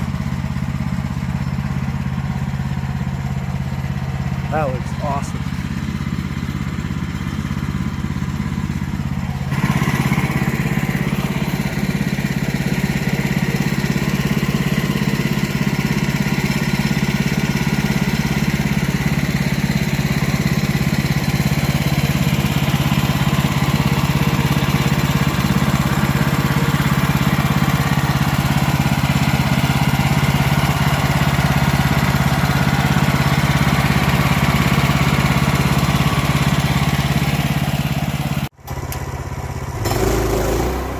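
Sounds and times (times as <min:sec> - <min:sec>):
small gas engine running: 0:00.0 - 0:40.9.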